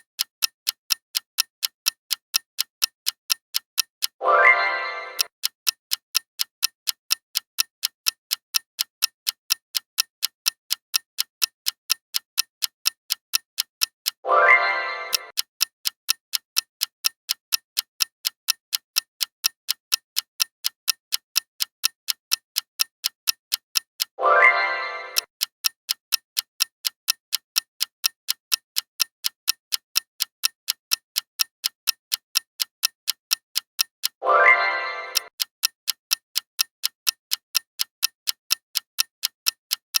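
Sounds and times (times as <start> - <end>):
countdown timer ticking: 3.8 - 5.6, 14.1 - 40.0.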